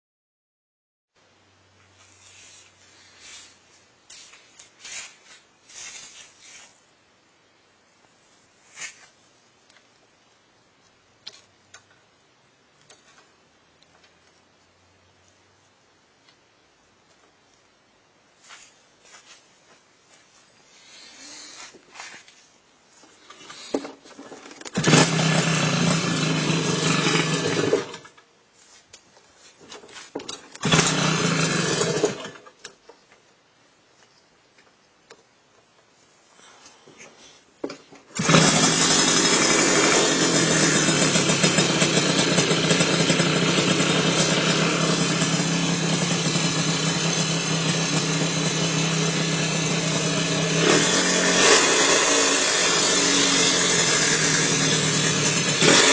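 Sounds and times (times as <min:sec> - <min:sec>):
motorcycle engine starting and stopping: 0:23.2 - 0:28.2, 0:29.7 - 0:32.8, 0:37.9 - 0:55.9.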